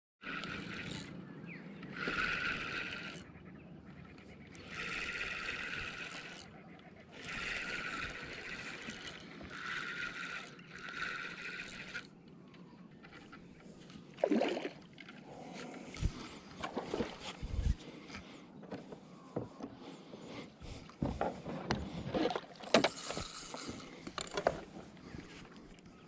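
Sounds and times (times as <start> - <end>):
person breathing heavily: 17.4 - 21.4.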